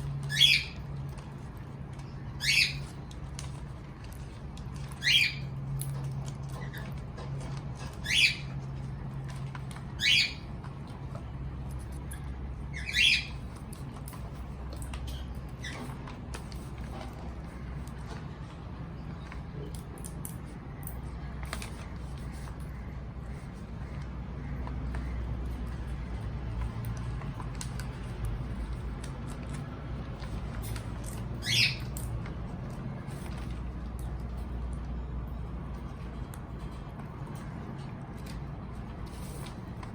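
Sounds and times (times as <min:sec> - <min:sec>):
cockatiel chirp: 0:00.3 - 0:00.8, 0:02.4 - 0:02.8, 0:05.0 - 0:05.5, 0:08.0 - 0:08.5, 0:10.0 - 0:10.4, 0:12.7 - 0:13.4, 0:31.4 - 0:31.9
cockatiel squawking: 0:12.7 - 0:13.4.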